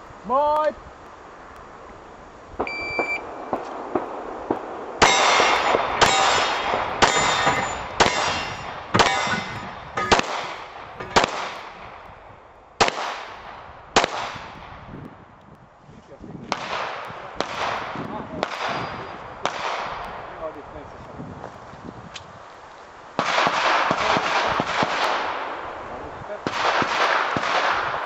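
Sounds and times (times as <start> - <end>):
pistol shots: 2.6 - 11.8, 12.8 - 14.7, 16.5 - 20.0, 23.2 - 25.6, 26.4 - 28.0
shot timer beep: 2.7 - 3.2.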